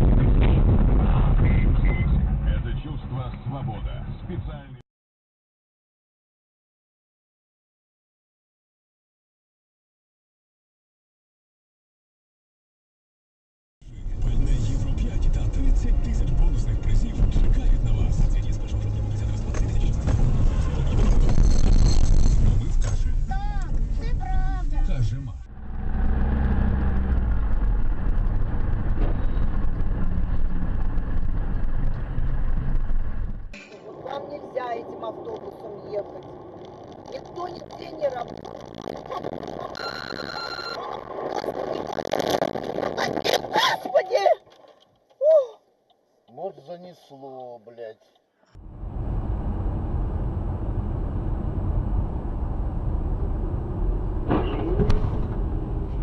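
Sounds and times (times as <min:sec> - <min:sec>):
car engine hum: 0:13.9 - 0:40.0, 0:48.6 - 0:56.0
tyre and road noise: 0:13.9 - 0:45.1, 0:48.6 - 0:56.0.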